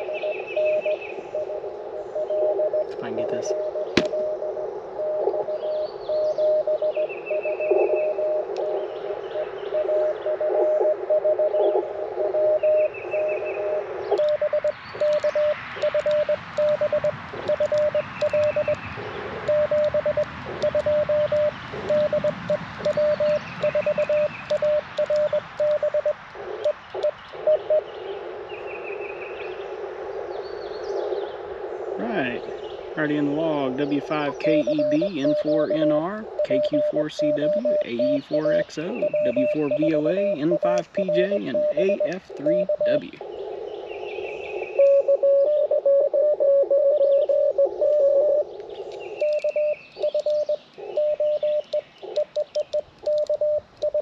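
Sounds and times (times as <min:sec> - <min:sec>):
bird trilling: 0:05.5 - 0:27.9, 0:32.0 - 0:54.0
morse code tones: 0:12.3 - 0:18.8, 0:19.5 - 0:27.8, 0:33.0 - 0:43.2, 0:44.8 - 0:48.4, 0:49.2 - 0:54.0.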